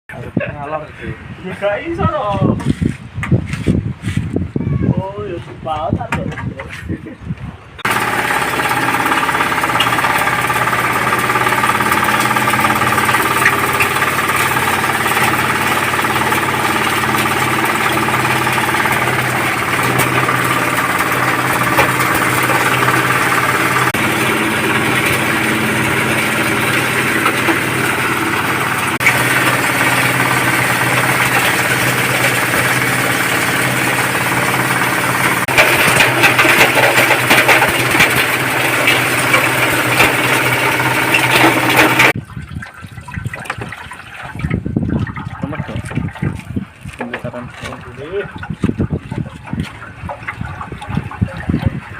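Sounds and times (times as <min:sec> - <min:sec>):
grinding mill machine drone: 0:07.8 - 0:42.2.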